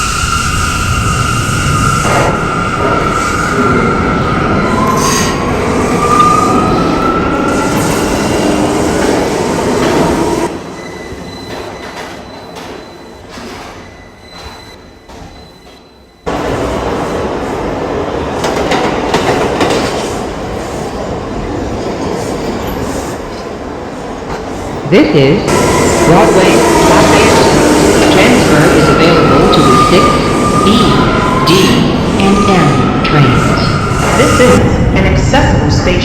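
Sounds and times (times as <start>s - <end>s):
train wheels rumbling on rails: 0.0s - 24.9s.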